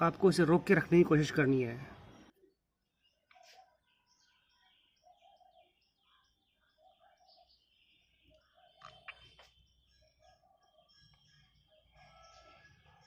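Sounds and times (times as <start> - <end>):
faint birds chirping: 0.0 - 13.0.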